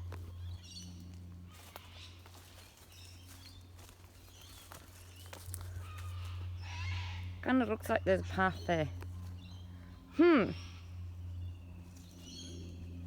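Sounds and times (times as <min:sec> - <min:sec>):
rustles through undergrowth: 0:00.0 - 0:09.7
birds chirping: 0:00.0 - 0:13.0
steady low hum: 0:00.0 - 0:13.0.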